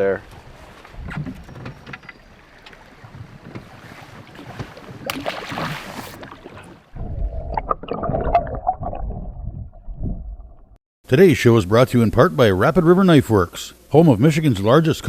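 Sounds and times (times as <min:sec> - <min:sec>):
water and small boat noise: 0:00.0 - 0:10.8
water splashing: 0:00.0 - 0:10.8
wind on microphone: 0:00.4 - 0:02.0, 0:03.0 - 0:10.7
low rumble: 0:07.0 - 0:10.8.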